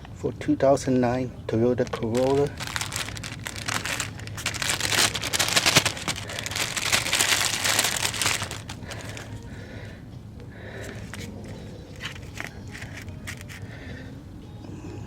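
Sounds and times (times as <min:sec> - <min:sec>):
plastic packaging crinkling: 0:01.8 - 0:09.4, 0:11.9 - 0:13.6.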